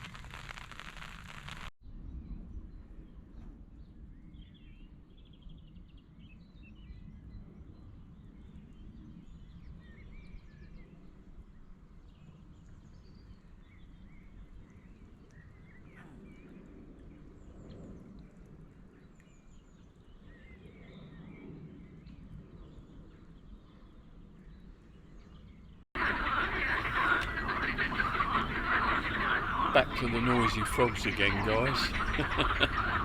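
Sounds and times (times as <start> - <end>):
small birds chirping: 25.2 - 33.0.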